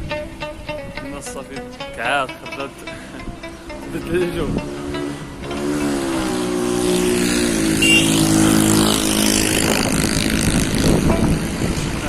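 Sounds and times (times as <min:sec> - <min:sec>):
vehicle engine revving: 0:03.6 - 0:12.0.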